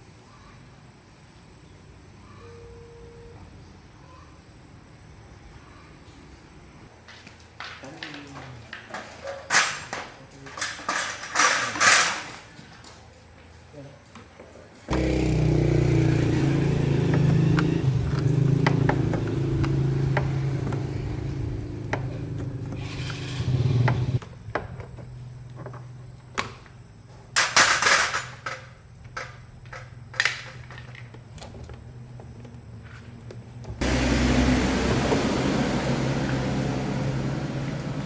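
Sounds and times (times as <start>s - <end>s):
motor humming: 14.9s - 24.2s, 33.8s - 38.0s.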